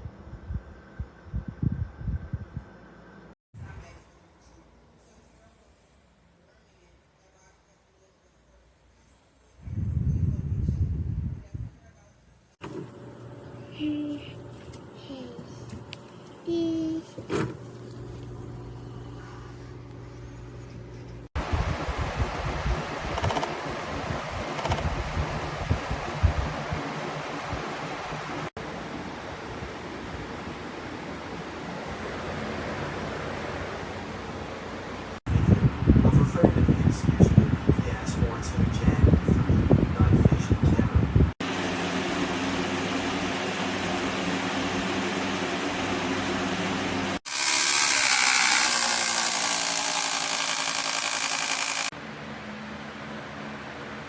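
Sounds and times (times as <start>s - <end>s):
box fan running: 12.6s - 54.0s.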